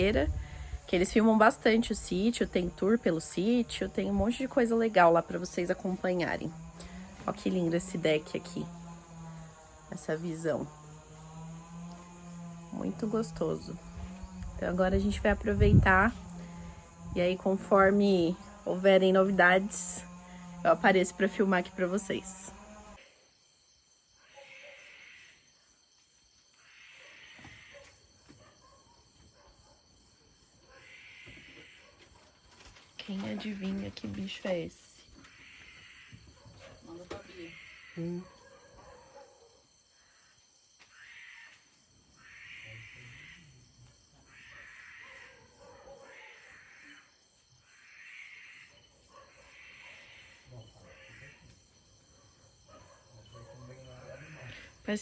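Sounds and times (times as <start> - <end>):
insects trilling: 0.0 - 55.0
raspy wailing animal calls: 35.2 - 36.4, 37.3 - 38.2, 40.9 - 41.6, 42.2 - 43.6, 44.3 - 47.1, 47.7 - 51.6.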